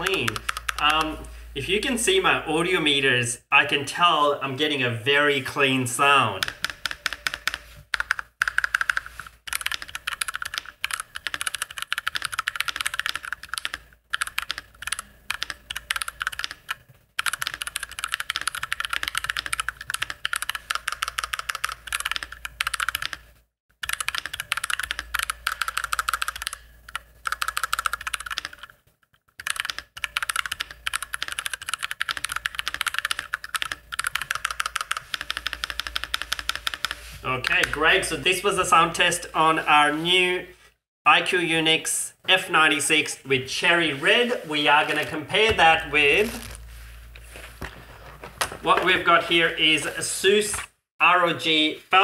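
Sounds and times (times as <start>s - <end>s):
fast typing on mechanical keyboard: 0.0s - 1.2s, 6.4s - 37.8s.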